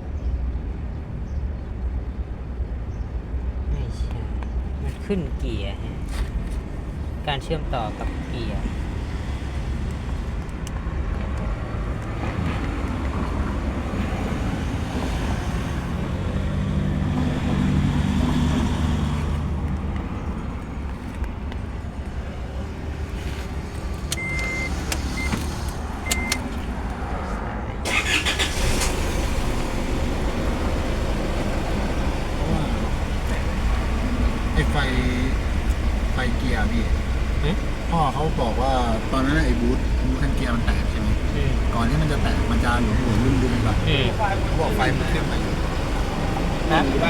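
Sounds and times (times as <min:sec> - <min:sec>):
road rumble: 0:00.0 - 0:47.0
diesel engine running: 0:04.2 - 0:47.0
short electronic beeps: 0:24.2 - 0:25.4.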